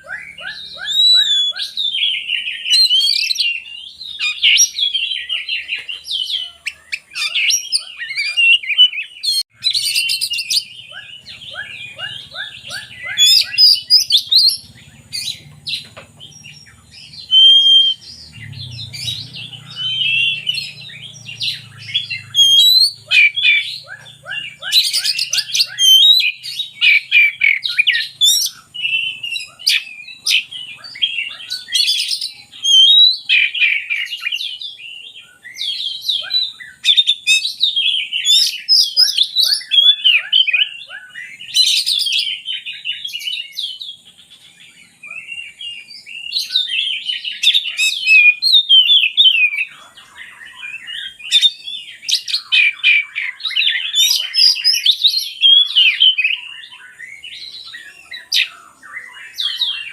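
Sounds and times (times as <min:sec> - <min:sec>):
harsh bird chattering: 0:00.0 - 0:02.2, 0:06.2 - 0:32.0
bird singing varied song: 0:00.0 - 0:59.9.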